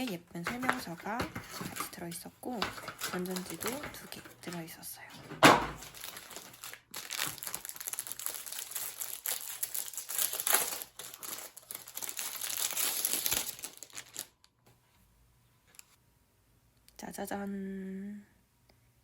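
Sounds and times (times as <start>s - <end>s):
packaging crinkling: 0.0s - 14.5s.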